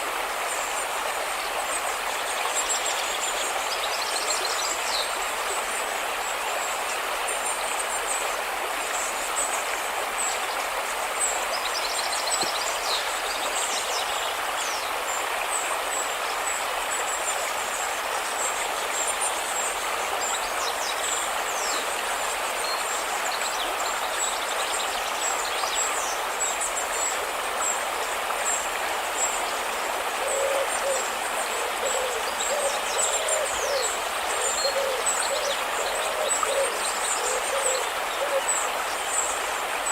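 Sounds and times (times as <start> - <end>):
river water rushing: 0.0 - 39.9
low hoot-like bird calls: 30.2 - 38.6.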